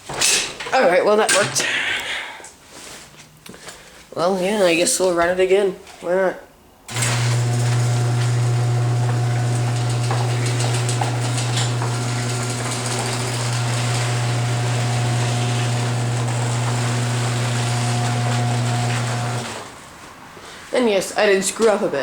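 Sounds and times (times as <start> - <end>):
garage door opener motor hum: 6.9 - 19.8.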